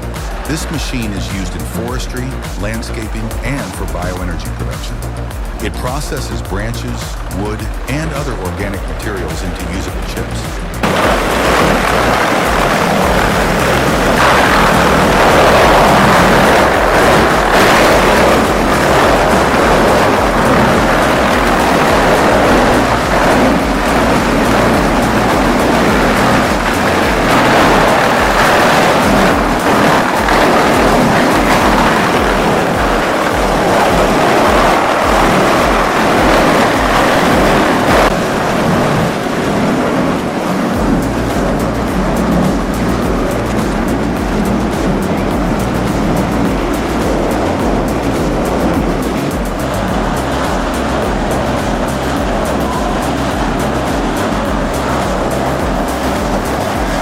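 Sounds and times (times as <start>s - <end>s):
regular low beat: 0.0s - 38.3s, 40.6s - 57.0s
loud machine noise: 0.0s - 57.0s
wood chipper shredding wood: 10.8s - 37.9s.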